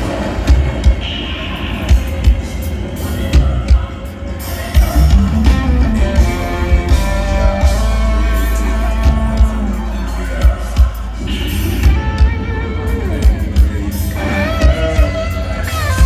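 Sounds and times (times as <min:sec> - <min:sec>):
live band music: 0:01.5 - 0:16.0
heavy bass: 0:04.7 - 0:16.0.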